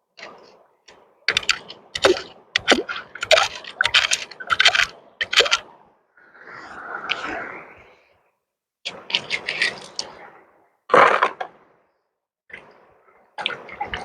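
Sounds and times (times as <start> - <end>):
rocks clacking together: 0.2 - 5.7, 10.9 - 11.6.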